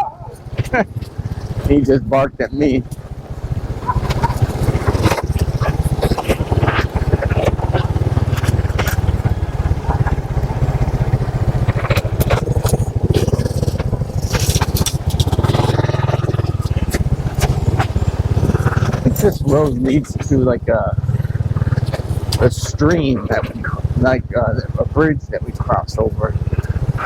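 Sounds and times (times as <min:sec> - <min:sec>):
motorbike engine running: 0:00.0 - 0:27.0
sharp clicks and knocks: 0:11.5 - 0:19.7.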